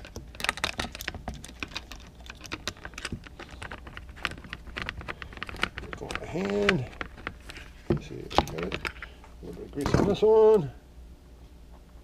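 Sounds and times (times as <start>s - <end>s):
small metal parts clicking: 0.0s - 9.1s.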